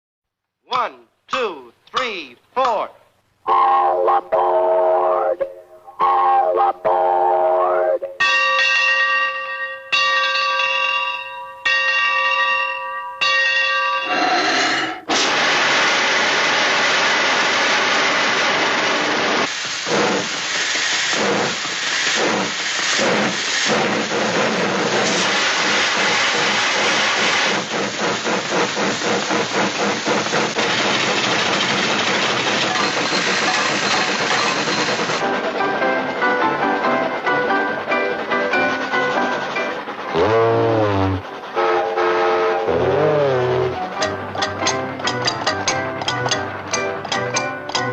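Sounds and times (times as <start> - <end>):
loud hiss: 14.4 - 35.2.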